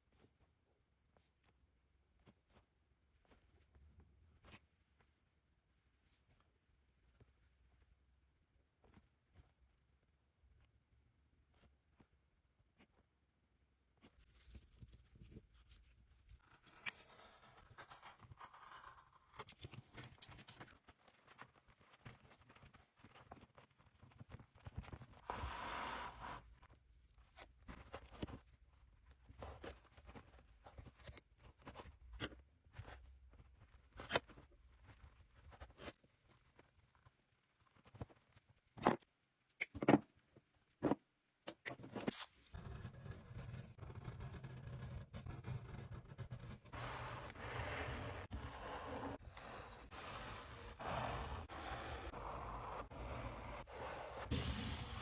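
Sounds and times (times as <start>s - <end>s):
rubbing and scraping leather: 42.1s - 55.0s.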